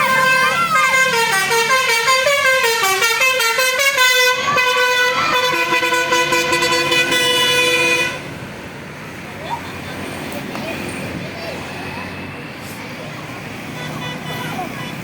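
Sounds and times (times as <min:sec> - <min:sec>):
musical bus air horns: 0:00.0 - 0:08.3, 0:13.6 - 0:15.0.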